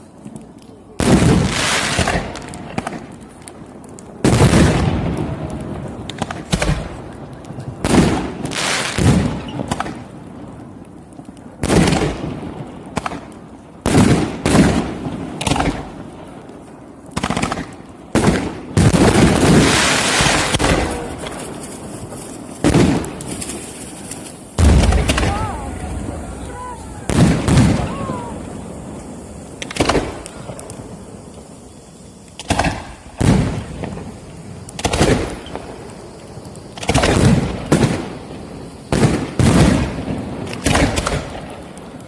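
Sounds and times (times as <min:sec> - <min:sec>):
fireworks shells bursting: 0:17.2 - 0:42.0.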